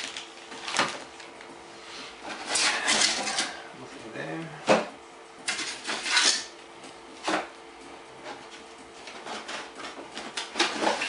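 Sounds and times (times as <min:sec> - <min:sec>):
packaging scrapes and knocks: 0:09.0 - 0:11.0.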